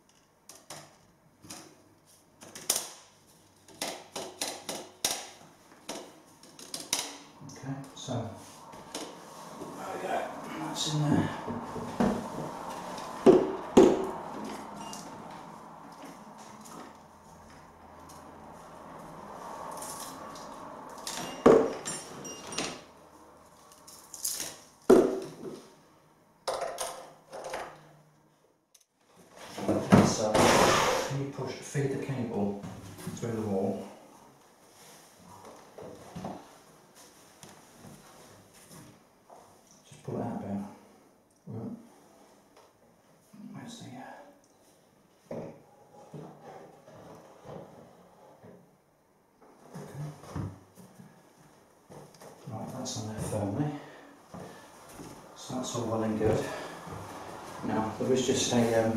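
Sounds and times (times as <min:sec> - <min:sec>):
sharp knocks: 0:13.2 - 0:14.1.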